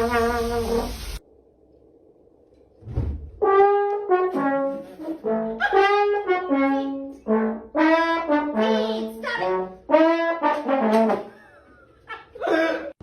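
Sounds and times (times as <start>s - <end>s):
trombone playing short notes: 3.4s - 11.2s.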